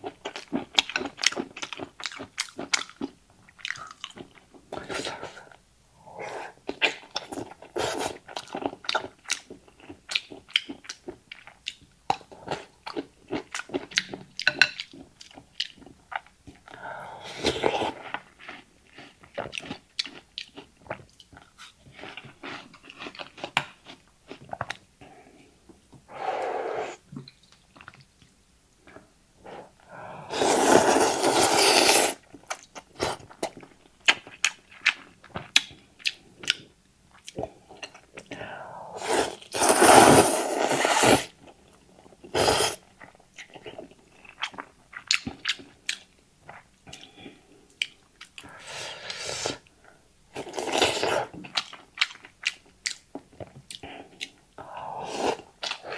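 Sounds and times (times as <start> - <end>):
wet chewing and smacking: 0.0 - 5.0, 6.7 - 16.8, 17.7 - 24.9, 32.2 - 38.4, 41.4 - 48.5, 51.2 - 54.5
noodle slurping: 26.1 - 27.1, 29.4 - 32.3, 38.4 - 41.4, 42.3 - 42.8, 48.5 - 49.7, 50.4 - 51.4, 54.6 - 55.9.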